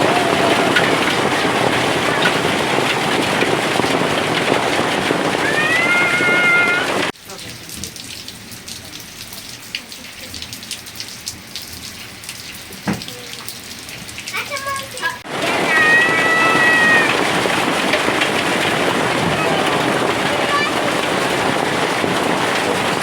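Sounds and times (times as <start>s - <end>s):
heavy rain hissing: 0.0s - 7.6s, 14.3s - 23.0s
raindrop impacts: 0.0s - 23.0s.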